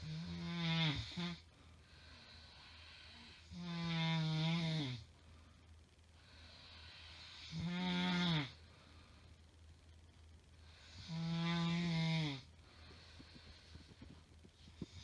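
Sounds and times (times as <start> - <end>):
woman snoring: 0.0 - 1.5, 2.2 - 5.1, 6.3 - 8.6, 10.7 - 12.5
quiet breathing: 0.0 - 9.8, 10.5 - 15.0.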